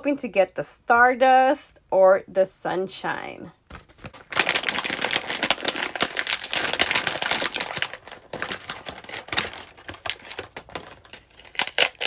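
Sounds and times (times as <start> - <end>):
plastic packaging crinkling: 3.7 - 12.0.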